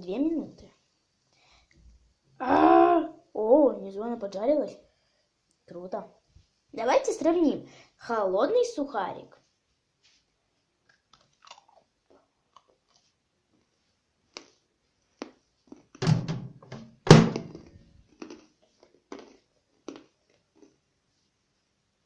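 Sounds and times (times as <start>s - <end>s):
chewing crunches: 10.8s - 13.7s, 14.3s - 14.6s, 15.2s - 16.0s, 18.1s - 20.8s
crunchy bread crouton crunching: 10.9s - 13.7s, 14.3s - 16.0s, 18.0s - 20.8s.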